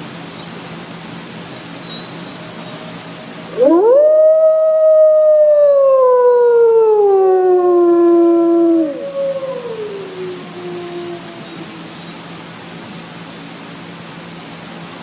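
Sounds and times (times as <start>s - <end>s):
faint hiss: 0.0s - 4.1s, 5.2s - 15.0s
wolf howling: 2.6s - 12.0s.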